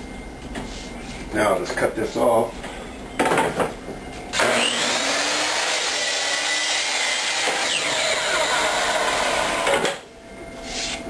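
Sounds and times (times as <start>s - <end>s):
power saw cutting wood: 4.4s - 10.0s.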